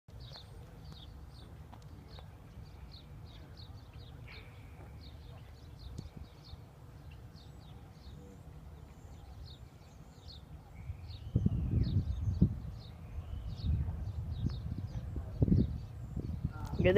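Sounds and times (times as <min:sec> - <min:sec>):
birds chirping: 0:00.1 - 0:16.9.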